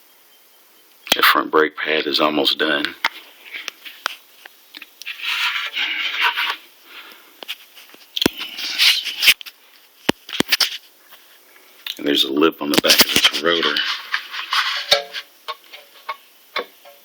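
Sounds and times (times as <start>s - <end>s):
scraping of brake parts: 5.0s - 6.7s, 12.8s - 17.0s.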